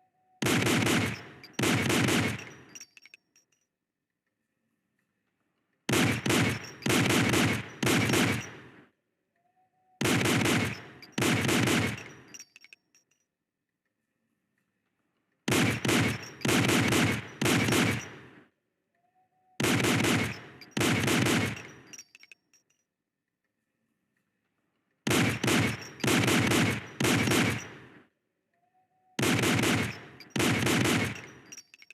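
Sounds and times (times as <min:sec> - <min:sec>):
pistol shots: 0:00.4 - 0:02.9, 0:05.9 - 0:08.8, 0:10.0 - 0:12.5, 0:15.5 - 0:18.4, 0:19.6 - 0:22.1, 0:25.1 - 0:28.0, 0:29.2 - 0:31.6
faint metallic clinks: 0:02.4 - 0:03.7, 0:11.9 - 0:13.3, 0:21.5 - 0:22.9, 0:31.0 - 0:31.9.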